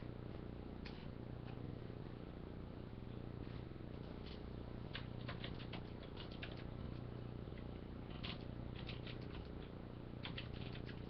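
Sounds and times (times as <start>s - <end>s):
low steady hum: 0.0s - 11.0s
faint keyboard typing: 4.2s - 7.0s, 7.6s - 11.0s.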